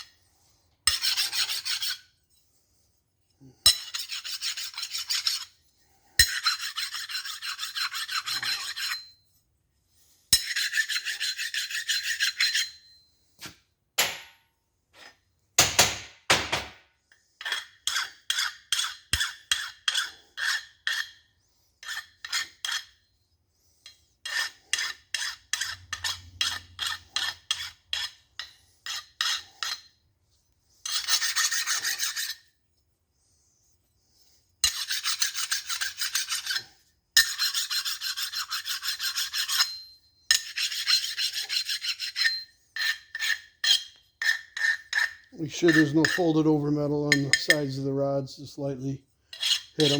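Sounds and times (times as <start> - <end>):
hand file rasping on steel: 0.8 - 2.1, 3.5 - 9.2, 10.2 - 12.9, 17.1 - 23.2, 23.8 - 30.0, 30.8 - 32.6, 33.7 - 47.9, 49.3 - 49.9.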